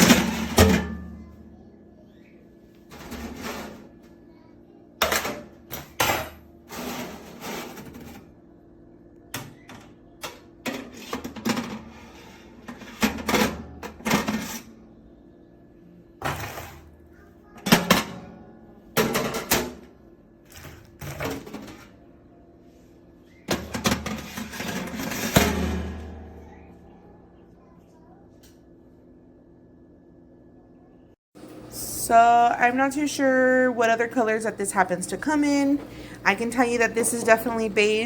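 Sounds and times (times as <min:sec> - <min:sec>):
faint low hum: 0:25.4 - 0:38.0.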